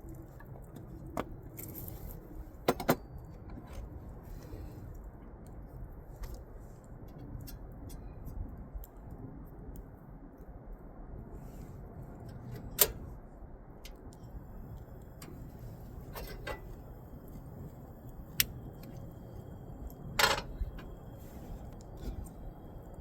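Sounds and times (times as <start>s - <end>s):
low background rush: 0.0s - 23.0s
cooking gear clinking: 16.0s - 16.8s.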